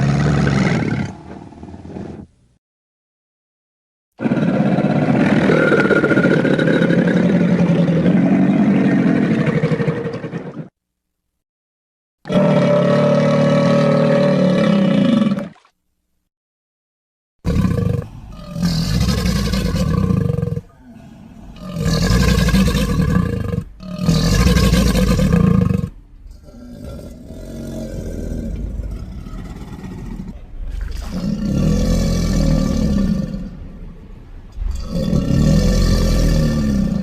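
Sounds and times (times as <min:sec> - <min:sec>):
crocodilian deep calls: 0:17.4 - 0:37.0.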